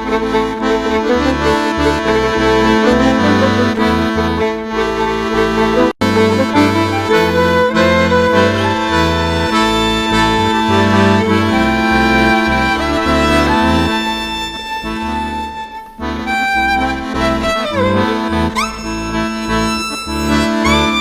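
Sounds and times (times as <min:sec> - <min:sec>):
accordion playing a tune: 0:00.0 - 0:21.0.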